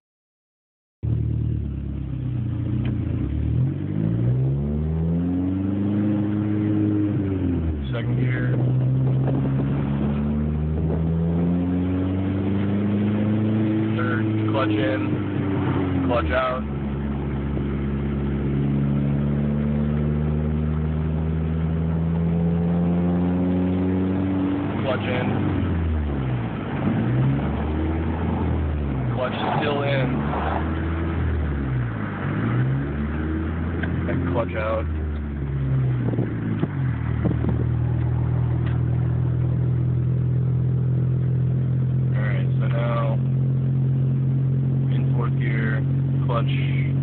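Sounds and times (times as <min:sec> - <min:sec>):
car engine idling: 0:01.0 - 0:04.0, 0:12.2 - 0:47.0.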